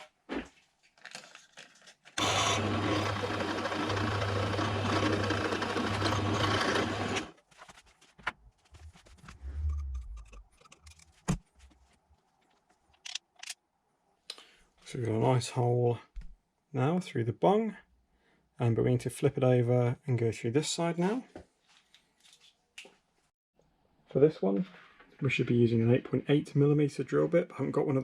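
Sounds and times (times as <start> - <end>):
electric drill boring through metal: 2.2 - 7.3.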